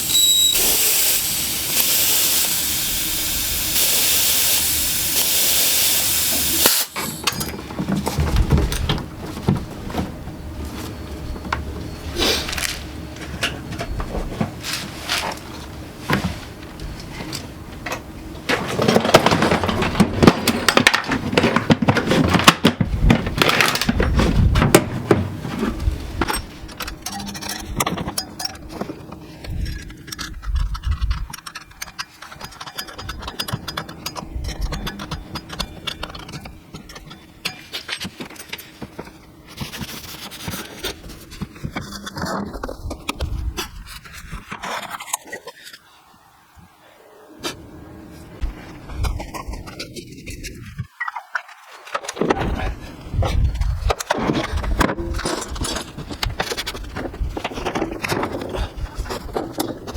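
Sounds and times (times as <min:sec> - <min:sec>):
metal tools clinking and scraping: 0:06.8 - 0:08.2, 0:26.2 - 0:29.0, 0:29.6 - 0:38.9.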